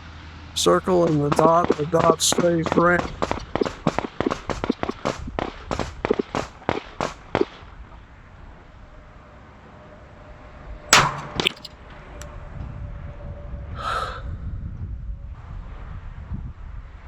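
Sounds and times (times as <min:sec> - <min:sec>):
wind rumbling on microphone: 0:00.0 - 0:17.0
rapid gunshots: 0:00.6 - 0:07.7
loud pistol shot: 0:10.9 - 0:11.6
short metal clang: 0:10.9 - 0:11.7.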